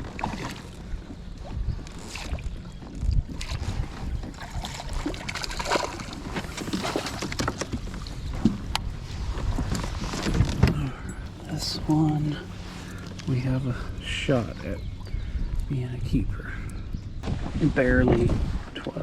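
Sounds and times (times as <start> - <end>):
water noise: 0.0 - 19.0
wind on microphone: 0.0 - 19.0
gear knocking and rustling: 1.7 - 11.5.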